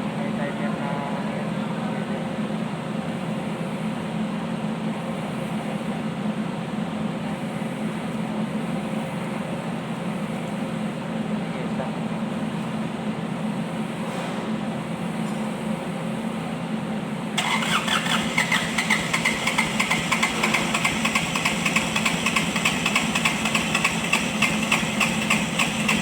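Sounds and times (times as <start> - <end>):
diesel engine humming: 17.3 - 26.0
uneven pulsing clatter: 18.2 - 26.0.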